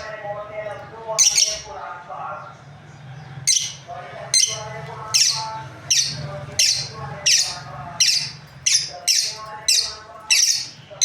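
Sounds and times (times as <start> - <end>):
lovebirds shrill calls: 1.2 - 1.7, 3.4 - 11.0.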